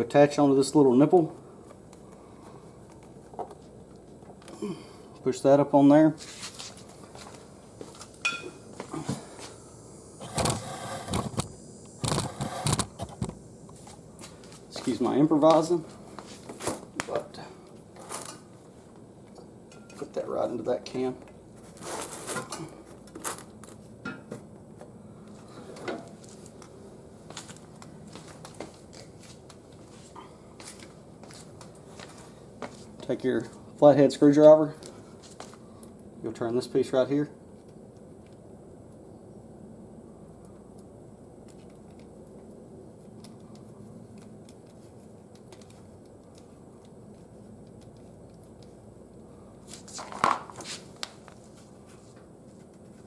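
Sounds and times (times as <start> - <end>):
rubber hose squeaking and scraping: 21.6 - 22.6.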